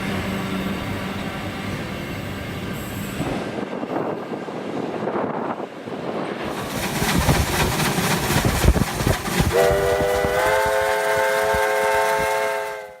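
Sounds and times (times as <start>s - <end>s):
freight train wheels rumbling on rails: 0.0s - 13.0s
locomotive air horn: 9.5s - 13.0s.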